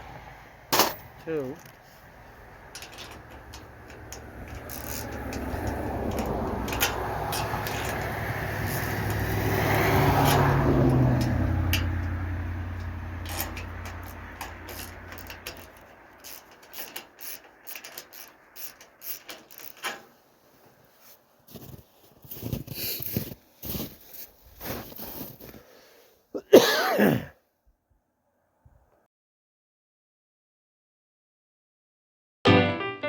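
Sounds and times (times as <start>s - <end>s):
vehicle passing by: 0.0s - 19.7s.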